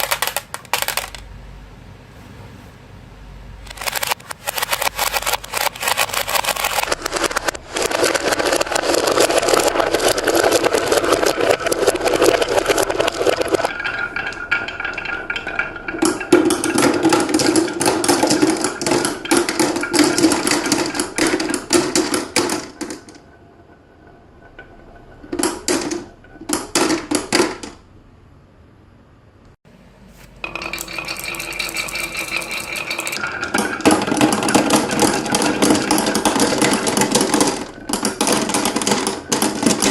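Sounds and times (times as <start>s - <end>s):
marbles clattering along marble run: 3.8s - 23.2s, 30.5s - 39.9s.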